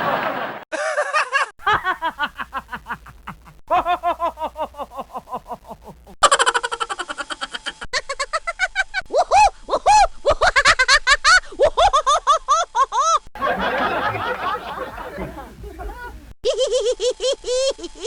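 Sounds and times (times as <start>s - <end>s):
several voices laughing: 0.0s - 6.2s, 13.4s - 16.3s
ha-ha laughter: 0.0s - 8.8s, 12.0s - 17.2s
laugh of rising-and-falling notes: 13.4s - 16.3s.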